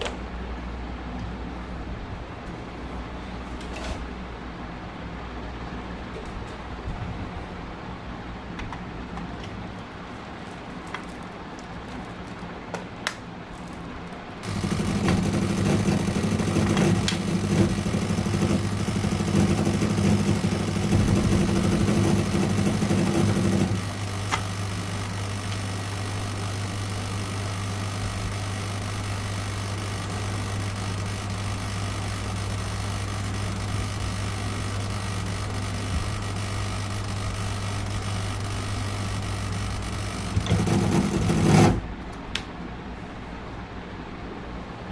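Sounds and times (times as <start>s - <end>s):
steady machine hum: 0.0s - 44.9s.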